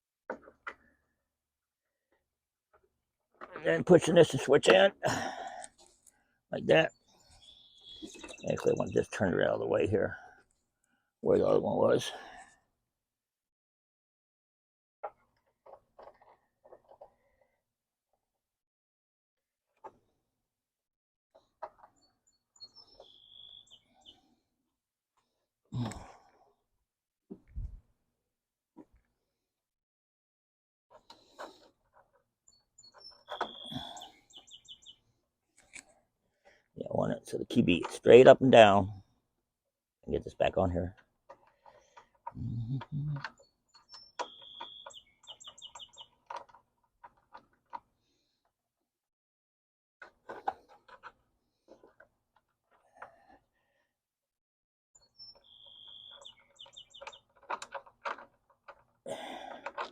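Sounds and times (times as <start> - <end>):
bird chirping: 6.6 - 9.7, 21.9 - 24.3, 32.5 - 35.2, 42.4 - 46.4, 55.0 - 57.4
parts knocking and clicking: 41.0 - 47.9, 56.1 - 59.9
short low vocal sound: 42.4 - 43.2.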